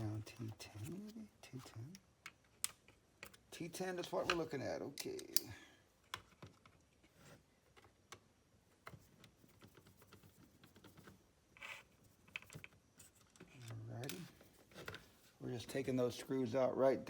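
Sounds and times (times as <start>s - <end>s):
soft hiss: 0.0s - 6.2s
plastic parts being handled: 6.0s - 15.4s.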